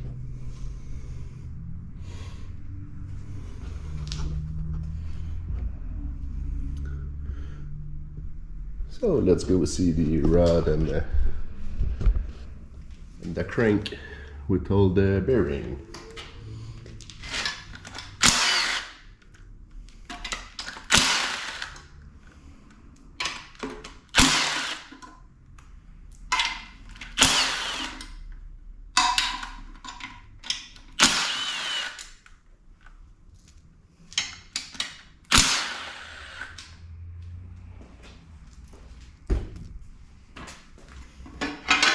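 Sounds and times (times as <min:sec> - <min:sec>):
power tool spinning in bursts: 0:18.2 - 0:19.0, 0:20.9 - 0:21.8, 0:24.2 - 0:24.9, 0:27.2 - 0:28.0, 0:31.0 - 0:32.1, 0:35.3 - 0:36.7
metal parts clinking: 0:41.4 - 0:41.9.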